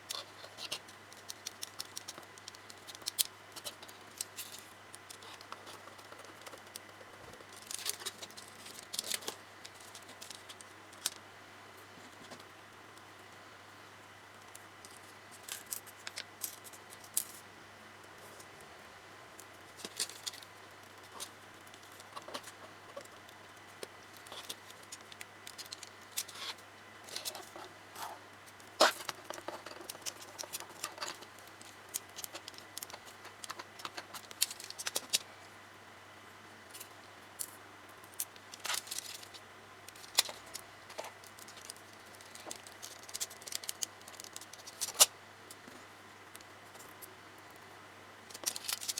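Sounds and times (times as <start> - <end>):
plastic parts clicking and snapping: 0.1 - 6.9, 28.8 - 35.2, 37.4 - 45.1, 48.3 - 48.9.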